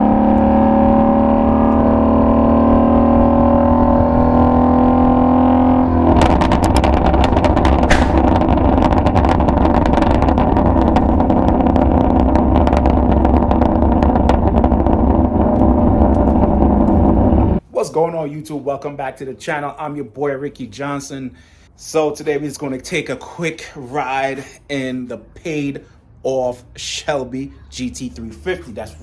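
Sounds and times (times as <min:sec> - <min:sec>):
car engine and exhaust drone: 0:00.0 - 0:17.6
exhaust pops and crackles: 0:00.0 - 0:17.6.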